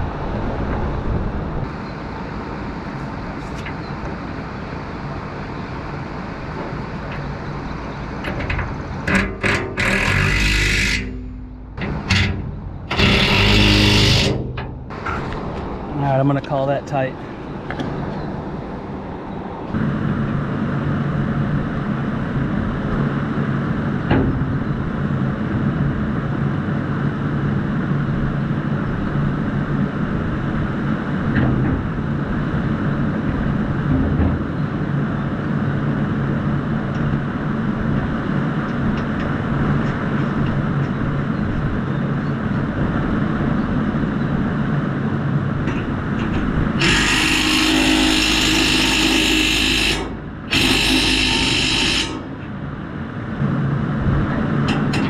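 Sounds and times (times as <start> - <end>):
engine running steadily: 0.0 - 55.0
power tool whine: 8.4 - 14.6, 46.8 - 52.4.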